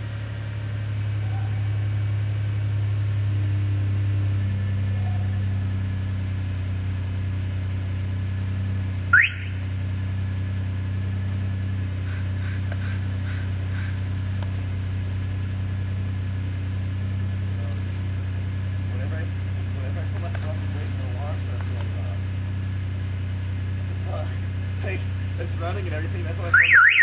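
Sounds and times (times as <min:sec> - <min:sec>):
vehicle engine humming: 0:00.0 - 0:27.0
car alarm siren whoop: 0:09.1 - 0:09.6, 0:26.5 - 0:27.0.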